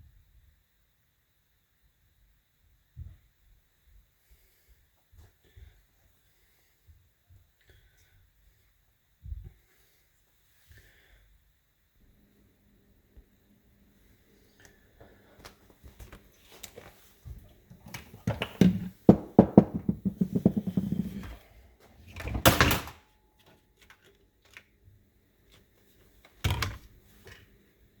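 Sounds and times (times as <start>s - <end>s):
handling clicks and knocks: 17.8s - 21.3s.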